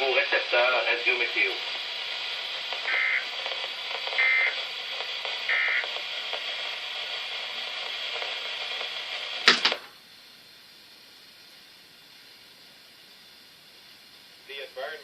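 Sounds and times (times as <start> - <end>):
radio static: 0.0 - 10.0, 14.4 - 15.0
faint hiss: 0.0 - 15.0
warbling data bursts: 0.6 - 9.2
loud click: 9.4 - 9.9.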